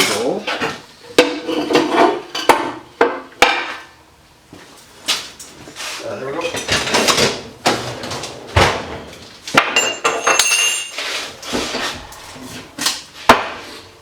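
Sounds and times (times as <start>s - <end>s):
metal piece ringing: 9.8s - 11.0s.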